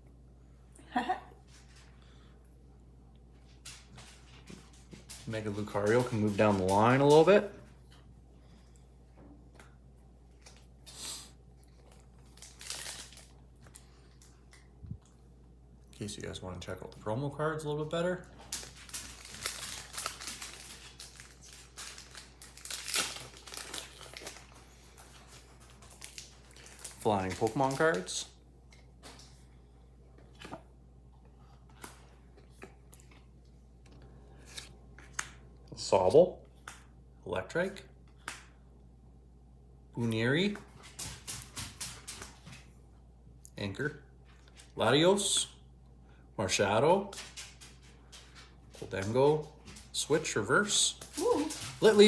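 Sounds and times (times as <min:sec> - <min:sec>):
low steady hum: 0:00.0 - 0:52.0
packaging crinkling: 0:11.8 - 0:14.4, 0:18.3 - 0:28.4.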